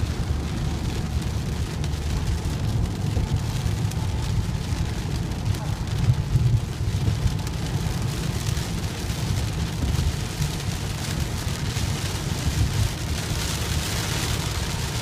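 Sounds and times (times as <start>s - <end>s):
heavy rain on a vehicle: 0.0s - 15.0s.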